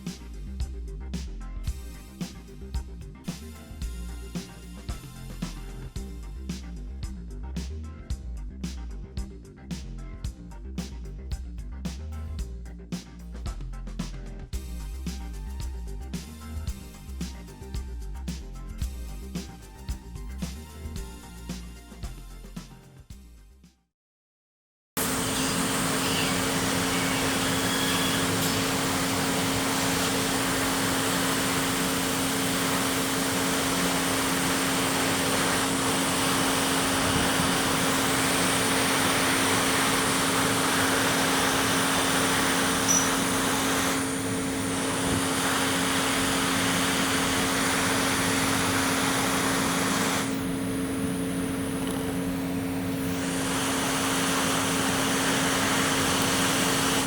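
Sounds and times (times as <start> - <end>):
electric air blower rushing hiss: 25.0 - 57.0.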